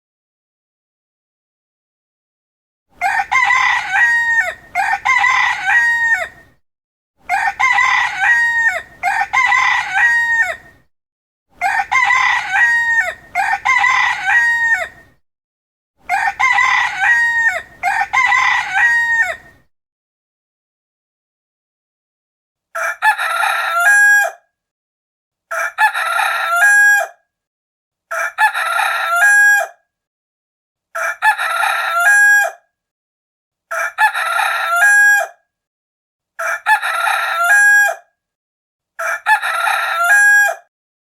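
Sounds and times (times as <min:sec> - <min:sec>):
rooster crowing: 0:03.0 - 0:06.5, 0:07.2 - 0:10.8, 0:11.6 - 0:15.1, 0:16.0 - 0:19.6, 0:22.8 - 0:24.4, 0:25.5 - 0:27.2, 0:28.1 - 0:29.8, 0:31.0 - 0:32.6, 0:33.7 - 0:35.4, 0:36.4 - 0:38.1, 0:39.0 - 0:40.7.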